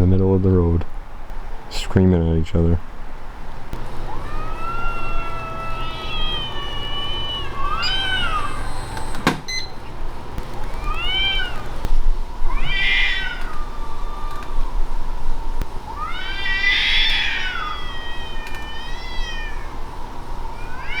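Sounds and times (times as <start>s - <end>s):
cats screaming and yowling: 3.7s - 21.0s.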